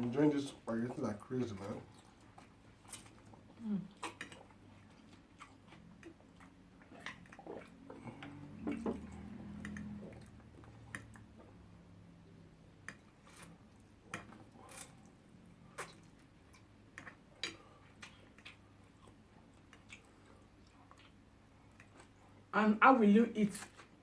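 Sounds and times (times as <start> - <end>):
chewing spaghetti: 1.4 - 11.8, 12.8 - 22.5.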